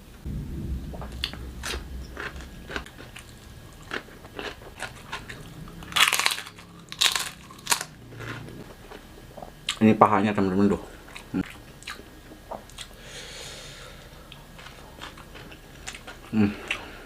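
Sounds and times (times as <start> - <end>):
person chewing crunchy food: 1.6 - 9.8, 14.3 - 17.0.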